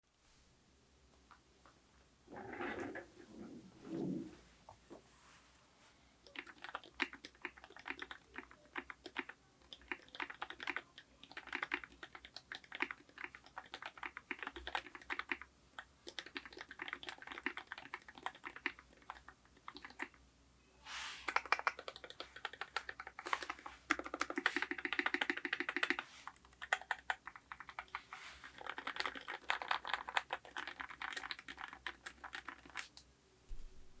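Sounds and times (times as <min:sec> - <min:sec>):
mechanical keyboard typing: 0:06.3 - 0:20.2, 0:21.3 - 0:33.0.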